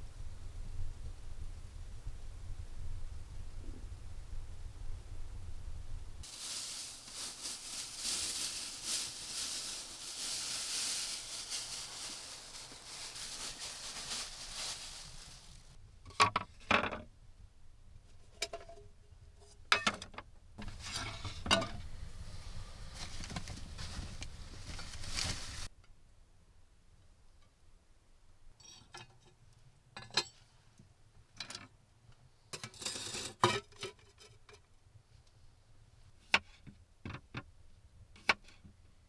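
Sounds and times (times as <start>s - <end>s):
steady hiss: 6.1s - 15.8s.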